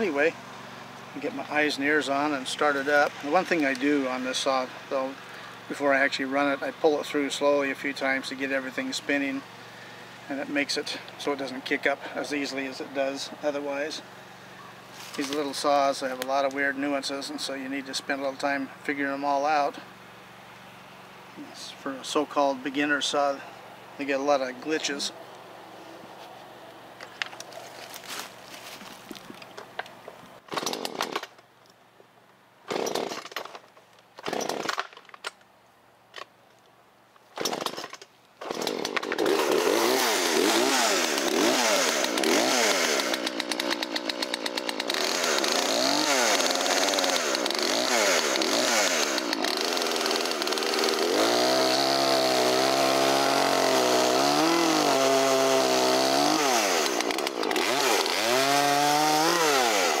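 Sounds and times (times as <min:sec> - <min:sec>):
chainsaw engine revving: 0:30.5 - 0:31.3, 0:32.7 - 0:33.5, 0:34.2 - 0:34.9, 0:37.4 - 1:00.0
chainsaw starter cord pulls: 0:30.5 - 0:31.4, 0:32.7 - 0:35.4, 0:37.3 - 1:00.0.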